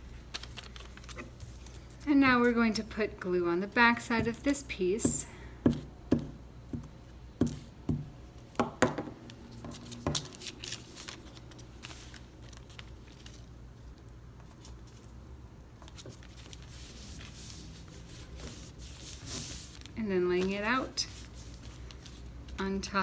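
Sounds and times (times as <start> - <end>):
paper rustling: 0.0 - 2.6, 9.3 - 15.2, 15.8 - 23.0.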